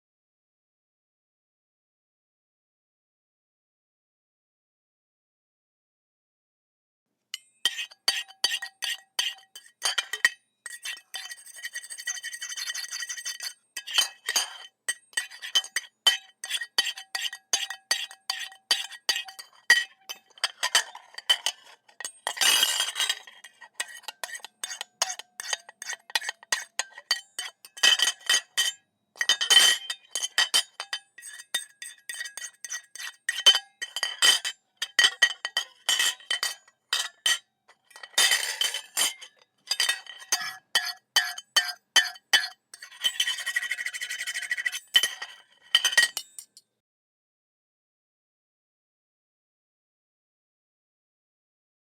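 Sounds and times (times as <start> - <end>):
metal fork scraping ceramic plate: 7.6 - 46.6.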